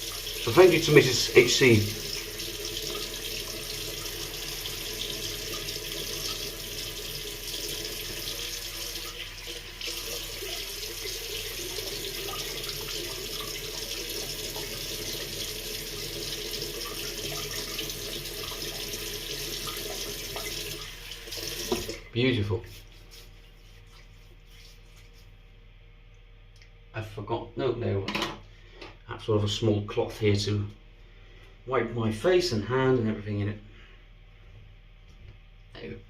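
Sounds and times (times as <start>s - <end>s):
tap water running into sink: 0.0s - 22.1s.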